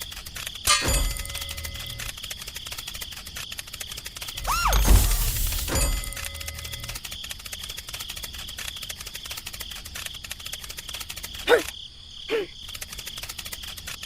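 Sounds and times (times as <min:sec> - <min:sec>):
animal calls sweeping up and down: 0:04.4 - 0:05.8.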